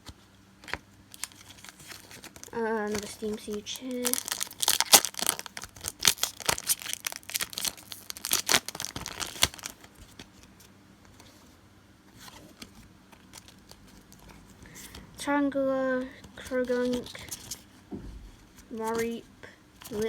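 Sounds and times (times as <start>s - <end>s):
foil wrapper tearing and crinkling: 0.7s - 10.2s.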